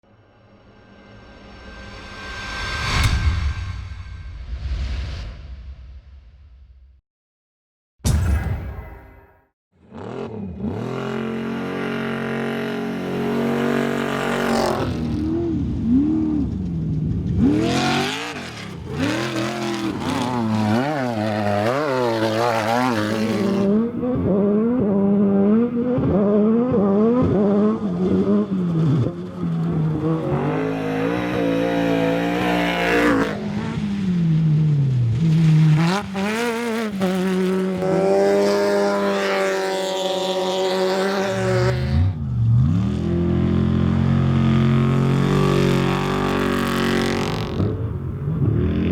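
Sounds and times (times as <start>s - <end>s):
race car engines revving: 9.8s - 48.9s.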